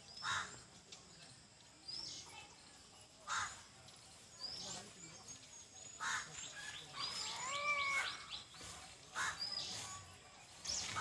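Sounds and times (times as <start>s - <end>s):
small birds chirping: 4.0s - 11.0s.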